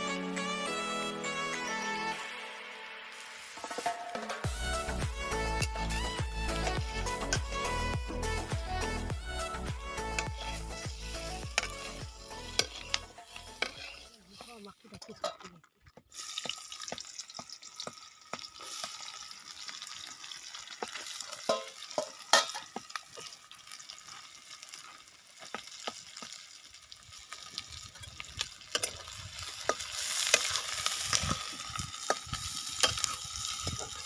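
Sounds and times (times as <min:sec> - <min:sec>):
food sizzling in a pan: 0:02.1 - 0:15.0, 0:16.1 - 0:34.0
spoon scraping a pan: 0:10.0 - 0:15.5, 0:20.8 - 0:23.4, 0:28.0 - 0:34.0.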